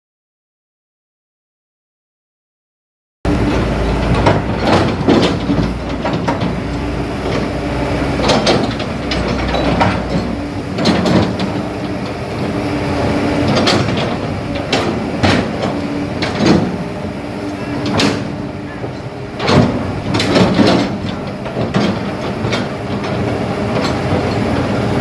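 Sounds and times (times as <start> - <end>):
excavator diesel engine running: 3.3 - 25.0.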